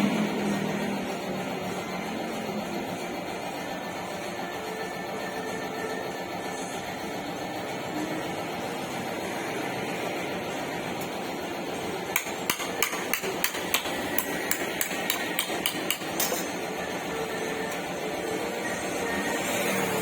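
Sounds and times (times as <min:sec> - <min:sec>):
hammer striking car body metal: 0:12.1 - 0:16.1.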